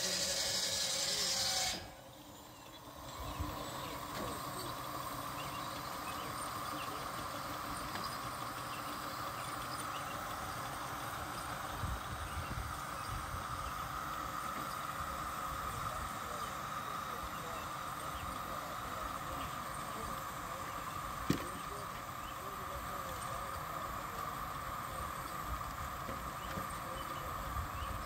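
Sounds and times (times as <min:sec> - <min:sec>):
steam hissing: 0:00.0 - 0:02.0
steady machine sound: 0:00.0 - 0:28.0.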